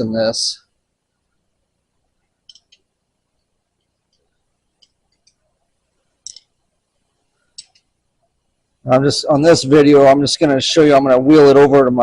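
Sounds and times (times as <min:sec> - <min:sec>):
metallic clicks of hand tools: 0:06.2 - 0:06.5.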